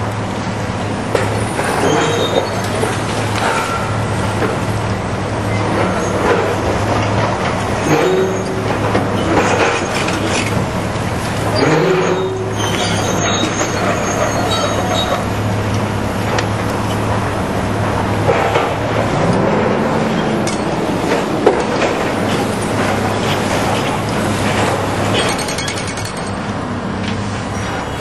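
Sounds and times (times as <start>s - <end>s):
diesel engine running: 0.0s - 28.0s
metal squeals: 1.6s - 4.2s, 5.5s - 6.5s, 7.8s - 10.6s, 11.4s - 15.5s.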